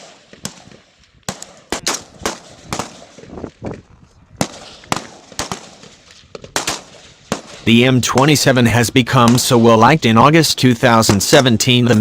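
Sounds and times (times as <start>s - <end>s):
rifle shots: 0.0s - 3.6s, 4.4s - 9.8s.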